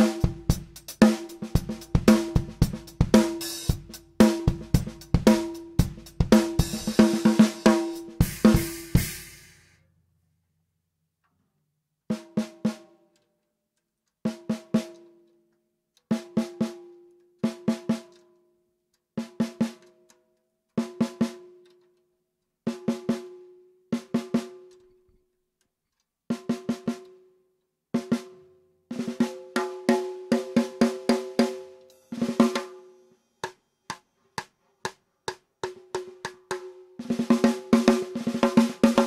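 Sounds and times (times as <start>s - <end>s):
snare drum strikes: 0.0s - 9.6s.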